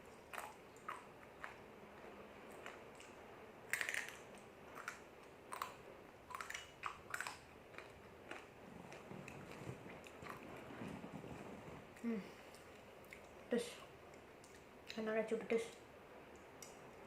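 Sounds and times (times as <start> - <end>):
crunchy snack being chewed: 0.2 - 1.6, 2.5 - 10.5.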